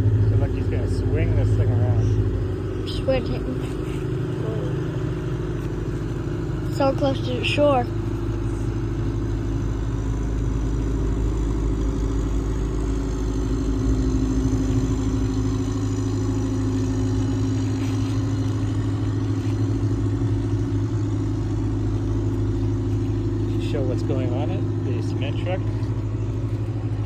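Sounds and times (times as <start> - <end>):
large engine droning: 0.0 - 27.0.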